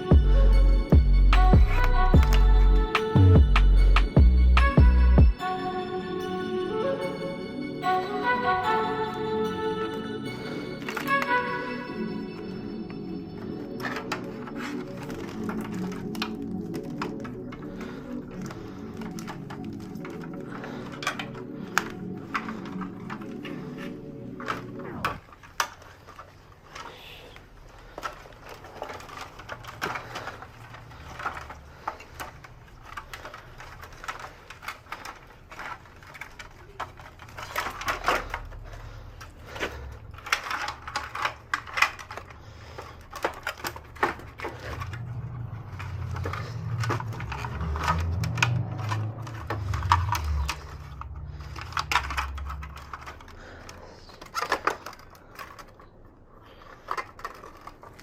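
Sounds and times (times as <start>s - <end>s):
low hum: 44.4s - 53.6s.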